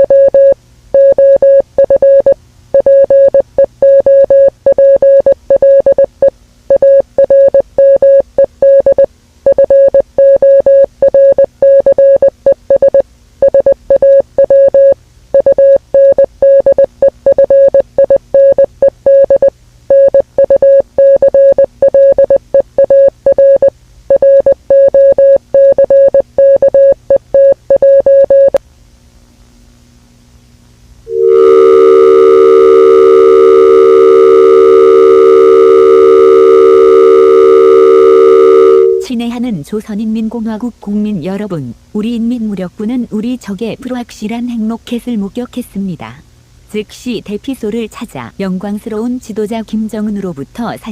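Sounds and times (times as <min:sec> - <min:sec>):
siren-like alarm tone: 0:31.1 - 0:39.1.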